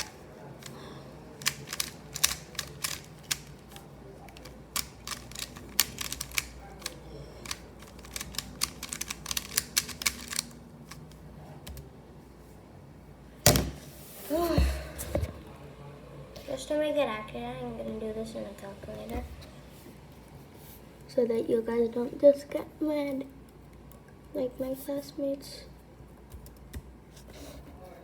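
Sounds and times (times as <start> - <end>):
hard plastic clicking: 1.4 - 11.8.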